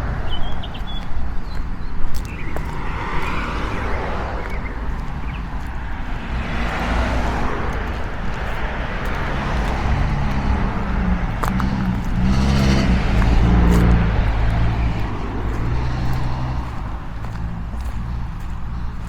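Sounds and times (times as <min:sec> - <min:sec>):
steady low rumble: 0:00.0 - 0:19.0
vehicle engine approaching: 0:00.0 - 0:19.0.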